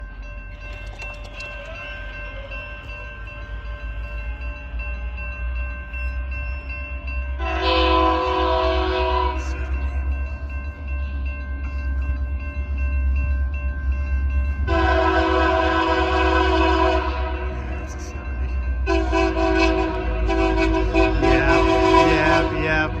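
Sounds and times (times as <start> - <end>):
train horn blast: 7.4 - 9.6, 14.7 - 17.6, 18.8 - 23.0.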